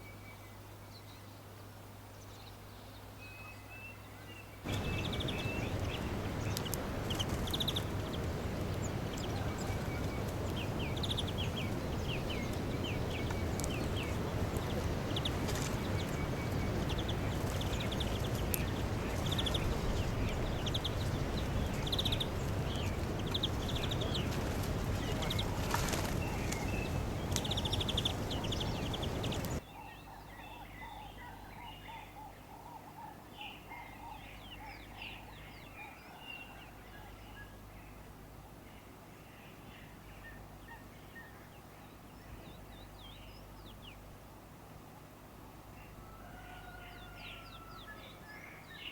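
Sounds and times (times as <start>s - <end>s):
high bird trills: 4.7s - 29.6s
loud steady rushing: 4.7s - 29.6s
birds chirping and calling: 4.7s - 37.6s.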